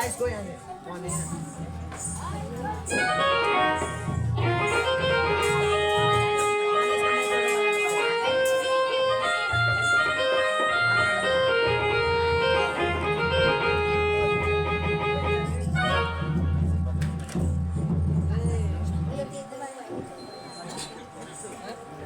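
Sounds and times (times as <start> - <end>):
low pulsing beat: 1.1 - 19.5
organ keyboard melody: 2.9 - 17.2.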